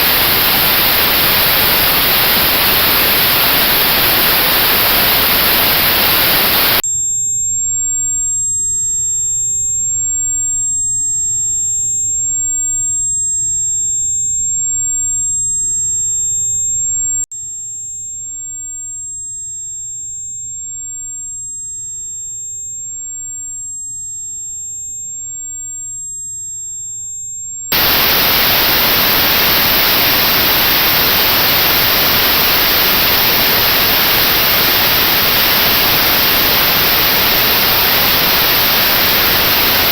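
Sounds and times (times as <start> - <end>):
high-pitched pure test tone: 0.0 - 6.8, 27.7 - 39.9
notched white noise hiss: 0.0 - 6.8, 27.7 - 39.9.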